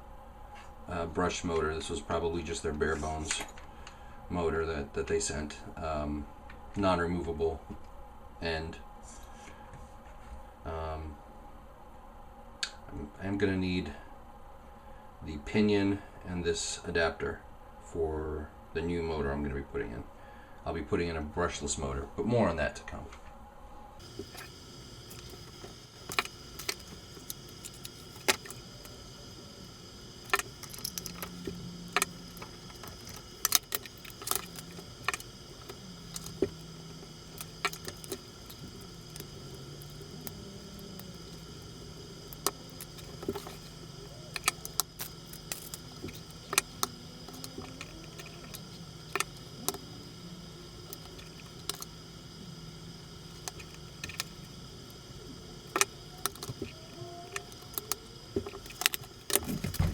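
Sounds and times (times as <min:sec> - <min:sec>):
steady low hum: 0:23.3 - 0:59.9
hand tools clicking and clinking: 0:24.0 - 0:49.8.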